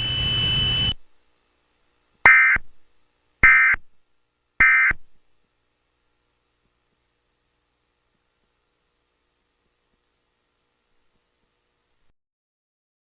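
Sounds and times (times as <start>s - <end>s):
digital data tone bursts: 2.3s - 2.6s, 3.4s - 3.8s, 4.6s - 5.0s.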